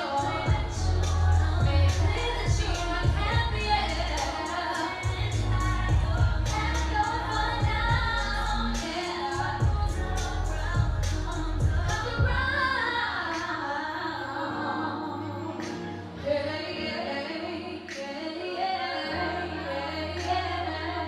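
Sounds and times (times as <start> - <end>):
backing track with deep bass: 0.0 - 12.7
woman singing: 0.0 - 21.0.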